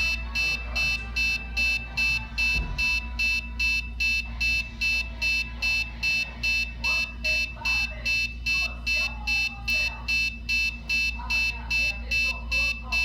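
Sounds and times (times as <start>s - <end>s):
high-pitched buzzer beeps: 0.0s - 13.0s.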